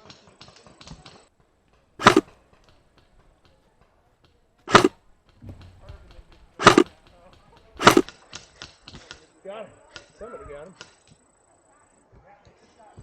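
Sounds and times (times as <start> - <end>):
loud short gun cracks: 2.0 - 2.3, 4.7 - 4.9, 6.6 - 6.9, 7.8 - 8.1
airsoft gun rattle of shots: 2.0 - 3.2, 4.7 - 8.9.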